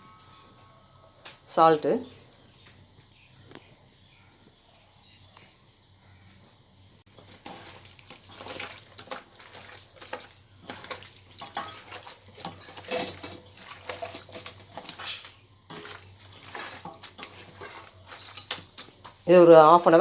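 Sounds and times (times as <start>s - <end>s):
hands squishing chicken in marinade: 7.1s - 20.0s.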